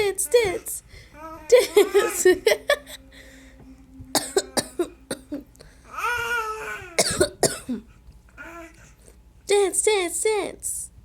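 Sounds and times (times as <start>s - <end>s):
woman coughing: 4.2s - 5.5s, 7.0s - 7.9s.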